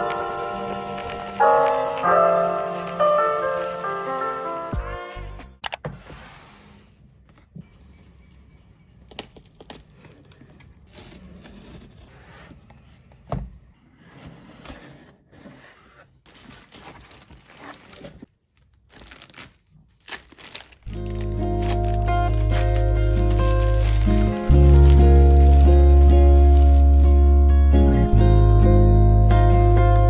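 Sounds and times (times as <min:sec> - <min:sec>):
scrapes and light knocks: 0:09.9 - 0:16.4
packaging crinkling and rustling: 0:14.3 - 0:27.3.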